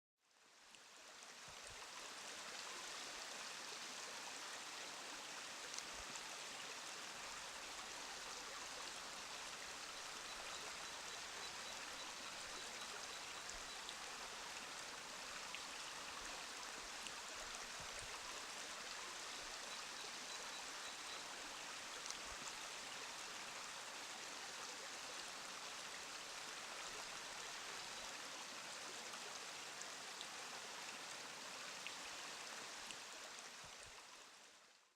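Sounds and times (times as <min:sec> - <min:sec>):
stream flowing: 0:00.3 - 0:34.9.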